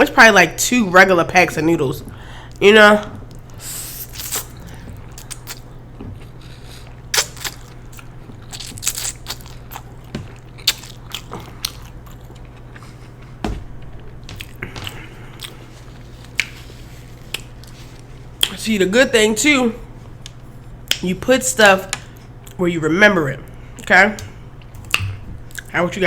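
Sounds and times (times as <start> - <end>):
low steady hum: 0.0 - 26.0
chewing with wet mouth smacks: 3.2 - 18.6.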